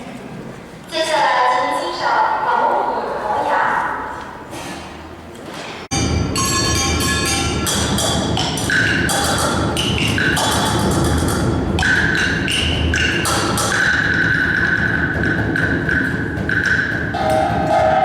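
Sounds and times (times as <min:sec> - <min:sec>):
tuned percussion ringing notes: 0:05.9 - 0:17.7.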